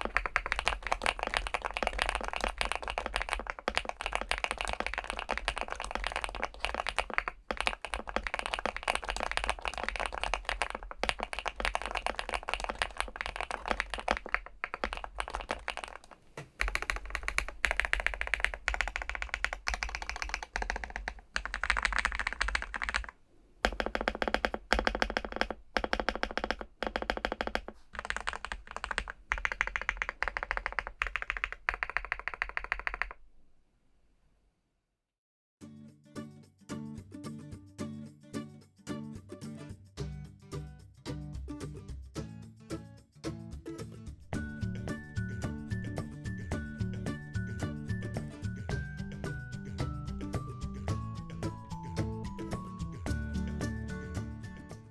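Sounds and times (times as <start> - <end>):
mechanical keyboard key clicks: 0.0 - 33.2.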